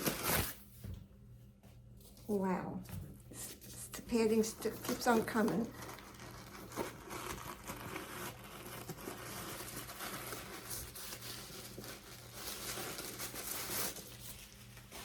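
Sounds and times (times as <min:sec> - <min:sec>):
packing padding crinkling: 0:04.6 - 0:15.0.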